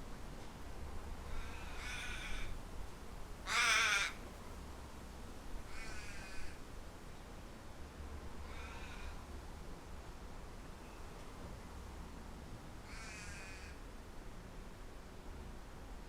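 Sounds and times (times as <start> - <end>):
low rumble of wind: 0.0 - 16.0
crow-like bird calling: 1.3 - 2.6, 3.4 - 4.2, 5.7 - 6.6, 8.4 - 9.2, 12.8 - 13.8.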